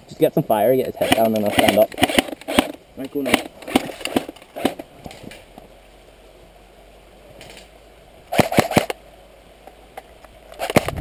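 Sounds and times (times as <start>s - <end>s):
airsoft rifle shots: 1.0s - 4.8s, 8.3s - 9.0s, 10.6s - 11.0s.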